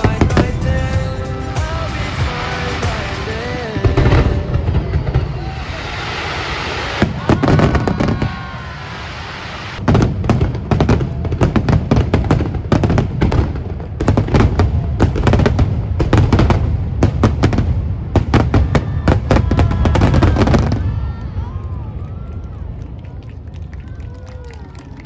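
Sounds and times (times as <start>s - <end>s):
music playing: 0.0s - 5.0s
fireworks crackling and booming: 0.0s - 25.0s.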